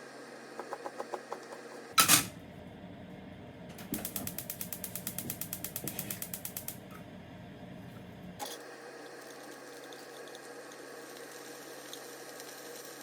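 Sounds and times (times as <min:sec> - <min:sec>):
rapid mechanical clicking: 0:03.8 - 0:06.8.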